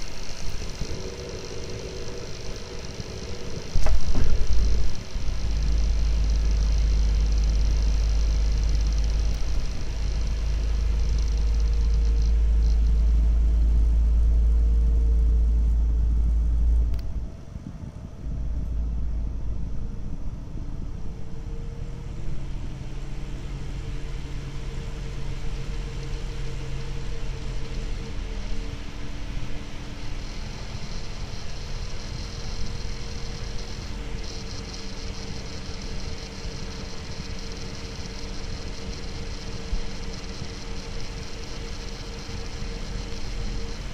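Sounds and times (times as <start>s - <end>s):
computer fans rumbling and humming: 0.0s - 43.9s.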